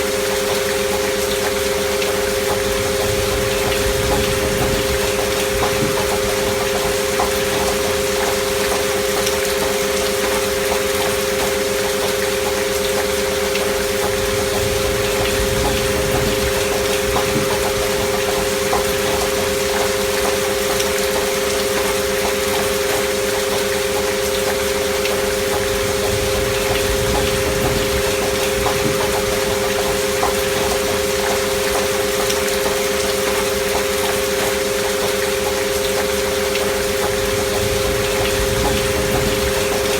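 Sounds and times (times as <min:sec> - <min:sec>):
gentle rain hiss: 0:00.0 - 0:39.9
rain drop ticks: 0:00.0 - 0:39.9
steady pure tone drone: 0:13.2 - 0:20.9.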